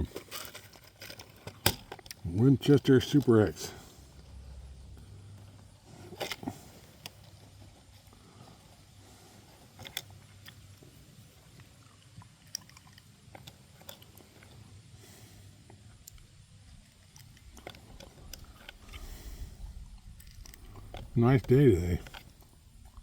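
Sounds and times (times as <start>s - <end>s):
ammunition and rifle clicks: 0.0s - 3.5s, 16.0s - 22.8s.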